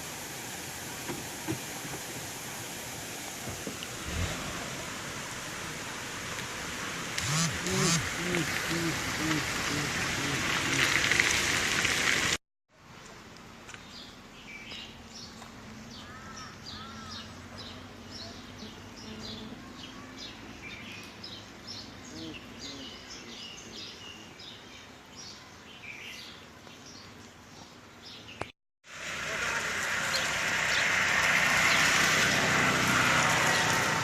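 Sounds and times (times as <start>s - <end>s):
small birds chirping: 13.7s - 28.5s.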